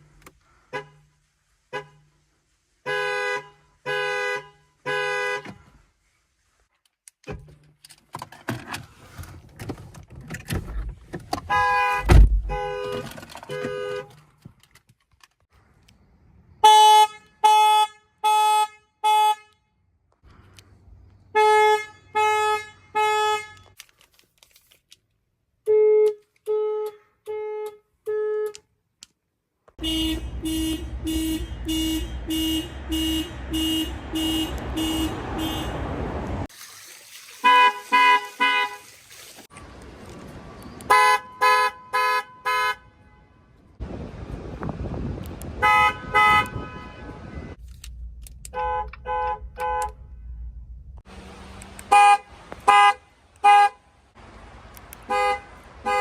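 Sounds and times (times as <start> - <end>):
car alarm horns honking: 2.8 - 5.6, 11.5 - 14.2, 16.6 - 19.6, 21.3 - 23.8, 25.7 - 28.6, 29.8 - 36.5, 37.4 - 38.9, 40.8 - 43.4, 45.6 - 47.6, 48.5 - 50.0, 51.8 - 53.8, 55.0 - 56.0.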